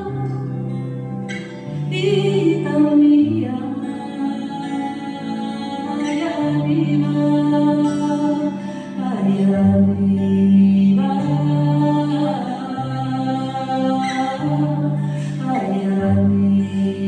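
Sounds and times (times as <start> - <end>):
slow live music: 0.0 - 17.0
wordless singing: 0.0 - 17.0.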